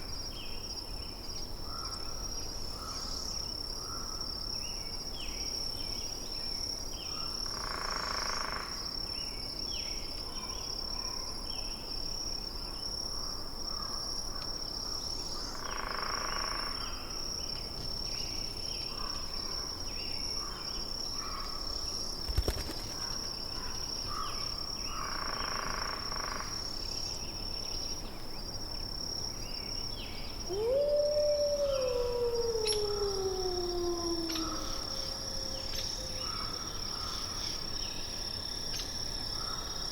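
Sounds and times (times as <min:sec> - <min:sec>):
insect trill: 0:00.0 - 0:39.9
animal howling: 0:30.5 - 0:36.6.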